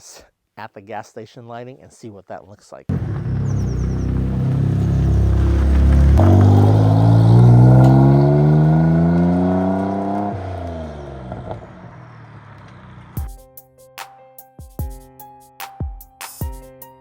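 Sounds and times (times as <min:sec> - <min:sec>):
car engine accelerating: 0:02.9 - 0:13.2.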